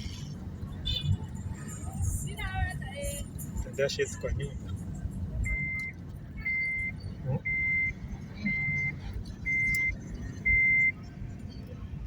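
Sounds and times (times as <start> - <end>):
reversing alarm beeping: 5.5 - 11.0.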